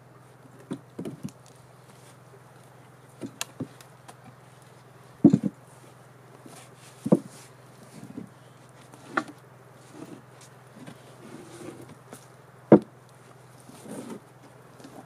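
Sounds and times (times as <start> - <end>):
low steady hum: 0.0 - 15.0
dull wooden knocks: 5.2 - 5.6, 7.0 - 7.4, 12.7 - 12.9.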